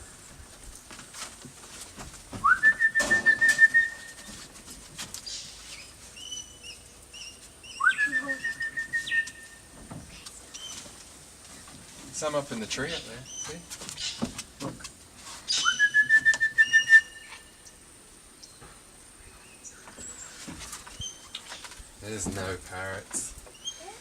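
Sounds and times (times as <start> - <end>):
trilling whistle: 2.4 - 4.2, 7.7 - 9.6, 15.5 - 17.5.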